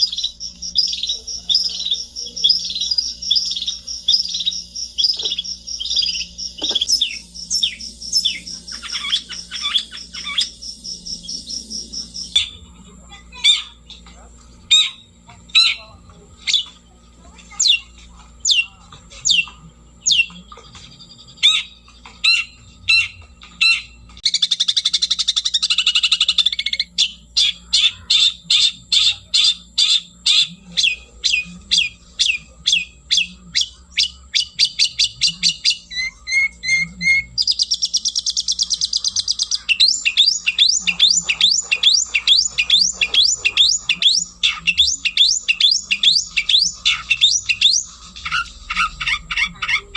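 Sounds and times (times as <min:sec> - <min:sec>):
bird rattling trills: 0:00.0 - 0:12.5, 0:37.5 - 0:49.9.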